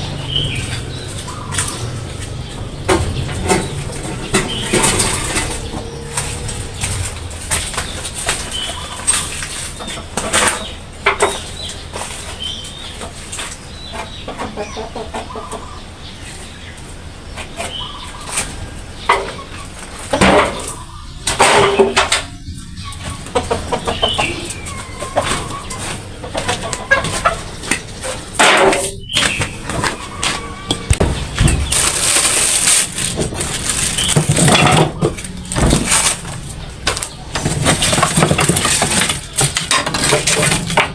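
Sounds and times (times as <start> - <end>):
knocks and clatter: 0.0 - 14.5, 17.3 - 40.9
chickens clucking: 0.0 - 40.9
wings flapping: 24.2 - 40.8.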